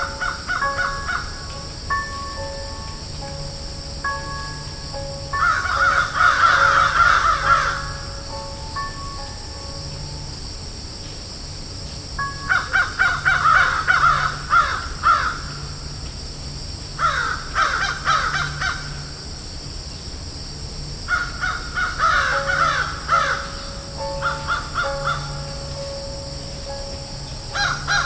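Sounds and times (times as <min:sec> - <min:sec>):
crows cawing: 0:00.0 - 0:01.7, 0:05.3 - 0:08.3, 0:12.4 - 0:15.8, 0:17.0 - 0:19.2, 0:21.1 - 0:25.6, 0:27.5 - 0:28.0
steady high-pitched hiss: 0:00.0 - 0:28.0.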